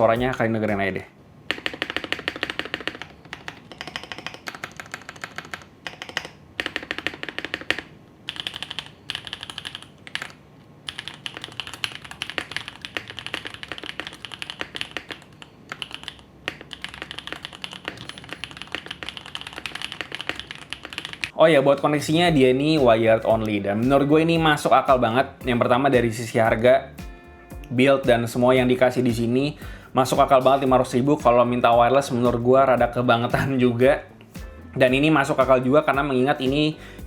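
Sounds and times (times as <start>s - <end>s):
clacky mechanical keyboard typing: 1.5s - 21.3s.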